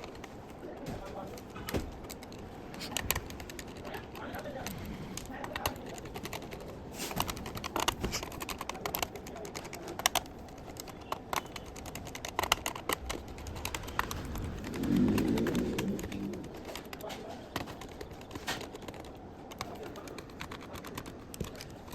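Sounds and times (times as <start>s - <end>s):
laptop clicks and taps: 1.0s - 21.9s
pigeon cooing: 13.1s - 16.8s.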